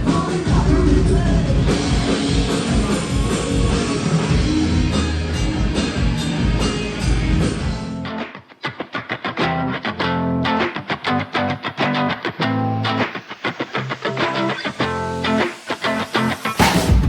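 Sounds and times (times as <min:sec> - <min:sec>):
loud rock music with singing: 0:00.0 - 0:08.0.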